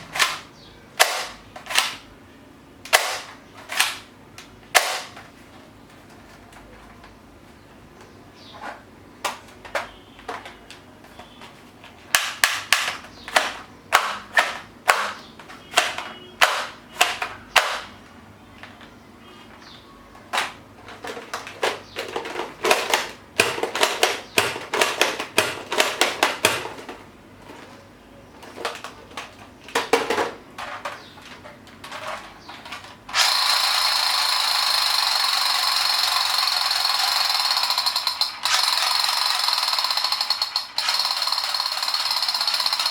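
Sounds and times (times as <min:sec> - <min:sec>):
toy guns clicking and banging: 0:00.1 - 0:02.0, 0:02.9 - 0:04.1, 0:04.8 - 0:05.2, 0:12.1 - 0:17.9, 0:20.3 - 0:27.0, 0:28.4 - 0:42.9.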